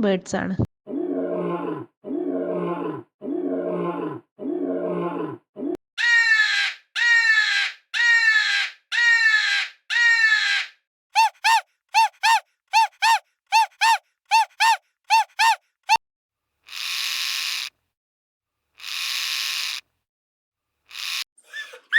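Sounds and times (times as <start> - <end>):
big cat roaring: 0.9 - 5.8
high rising and falling calls: 6.0 - 16.0.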